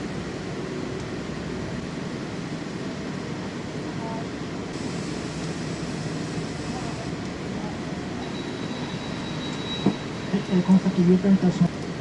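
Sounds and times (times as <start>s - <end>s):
bus engine and road noise: 0.0s - 12.0s
high hiss: 4.8s - 7.2s.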